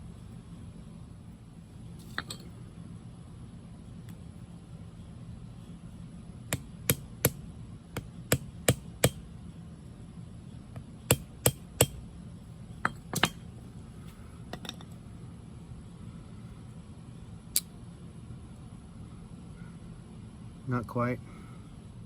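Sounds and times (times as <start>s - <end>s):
axe knocking on wooden stick: 6.5s - 7.4s.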